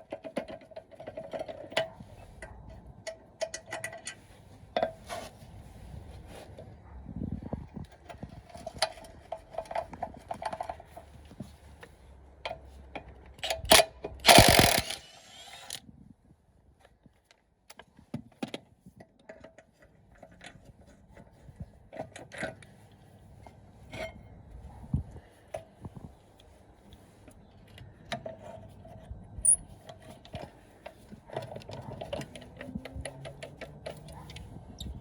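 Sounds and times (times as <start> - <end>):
metallic clicks and clinks: 13.7 - 15.8
ratchet clicking: 13.7 - 15.8.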